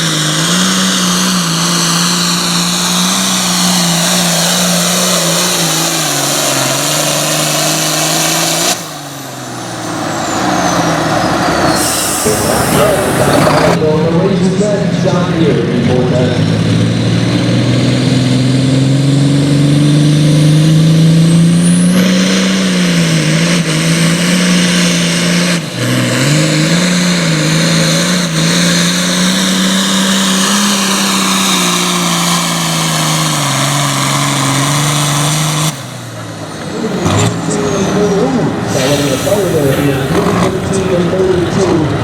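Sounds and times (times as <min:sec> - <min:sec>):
diesel tractor engine at full throttle: 0:00.0 - 0:42.0.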